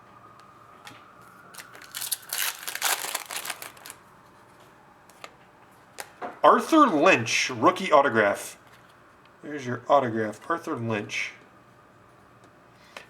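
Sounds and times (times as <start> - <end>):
foil wrapper crinkling and tearing: 1.5 - 4.0.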